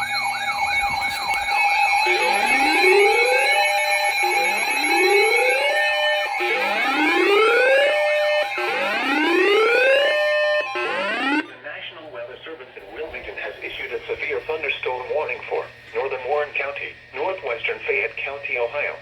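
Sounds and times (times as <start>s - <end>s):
siren-like warbling sweeps: 0.0s - 11.6s
steady alert tone: 1.9s - 11.6s.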